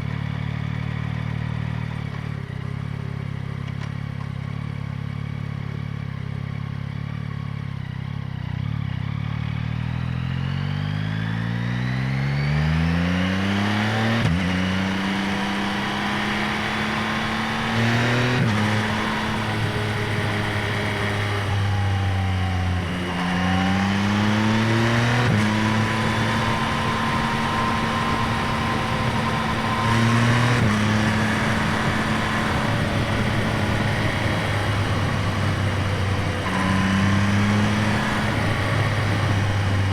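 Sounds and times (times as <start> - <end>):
motorcycle engine revving: 8.0 - 39.9.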